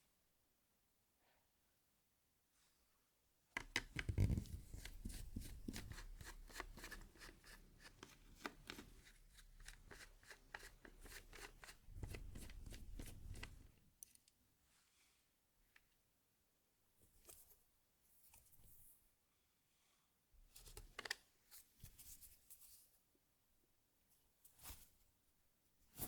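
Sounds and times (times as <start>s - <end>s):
rustling handling noise: 3.8s - 13.7s.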